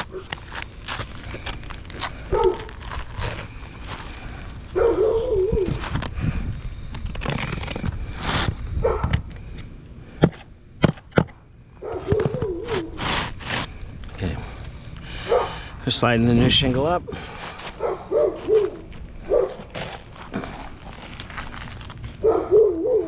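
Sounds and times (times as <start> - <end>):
dog whining: 2.3 - 2.8, 4.8 - 5.8, 11.8 - 13.0, 17.8 - 19.6, 22.2 - 23.0
roof shingle scraping and knocking: 6.9 - 9.2, 12.0 - 13.8, 19.4 - 22.2.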